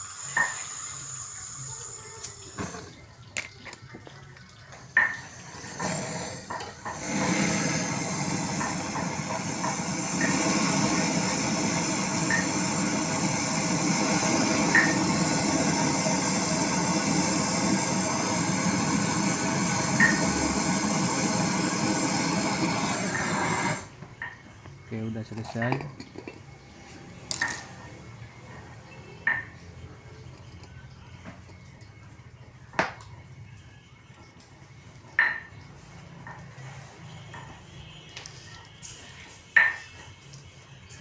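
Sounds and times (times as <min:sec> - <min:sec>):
torch flame hissing: 0:00.0 - 0:03.0, 0:05.2 - 0:24.0.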